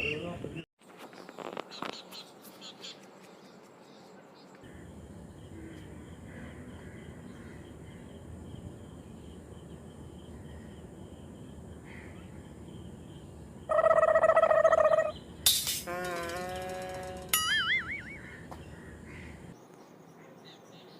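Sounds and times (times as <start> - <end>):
loud buzzing tone: 15.8 - 18.3.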